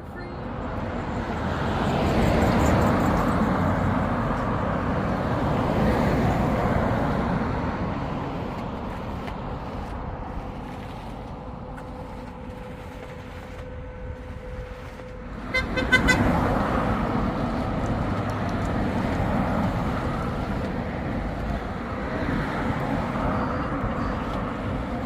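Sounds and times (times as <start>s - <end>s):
vehicle running: 0.0s - 25.0s
vehicle horn short toots: 15.4s - 16.4s.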